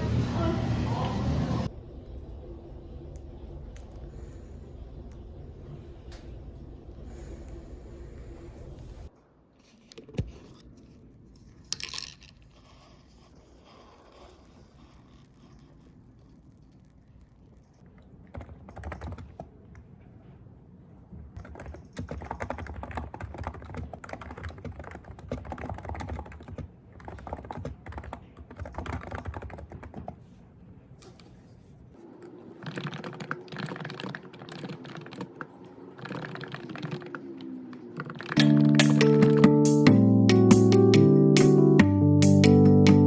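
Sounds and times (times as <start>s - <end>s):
typing on a keyboard: 18.3s - 19.5s, 21.4s - 30.2s, 32.6s - 39.6s.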